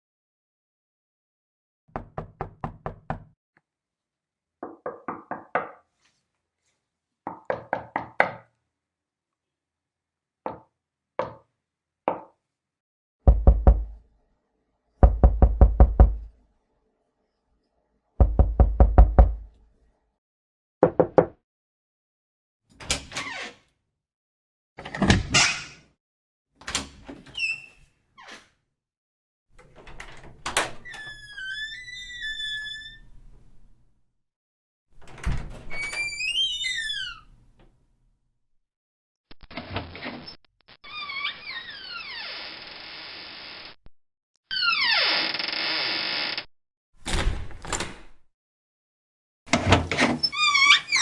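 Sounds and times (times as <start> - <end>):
knocking on a door: 1.9 - 3.3, 13.3 - 13.9, 15.0 - 16.2, 18.2 - 19.4, 20.8 - 21.4.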